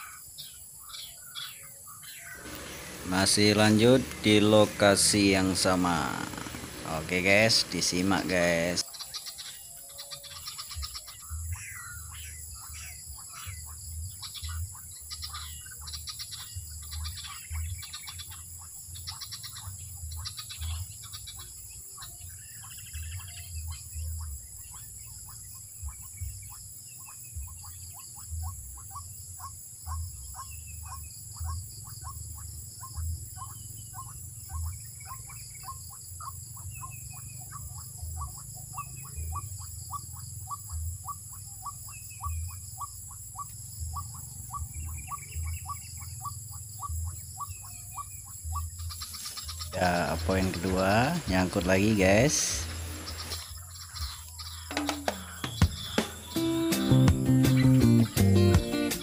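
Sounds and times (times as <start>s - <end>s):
high insect drone: 0.0s - 57.4s
bird calling short repeated notes: 2.3s - 8.8s, 54.4s - 57.8s.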